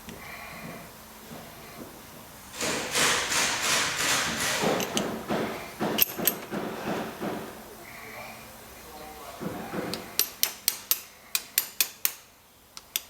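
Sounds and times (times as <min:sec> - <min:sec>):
rhythmic tool knocks: 0:02.6 - 0:07.5.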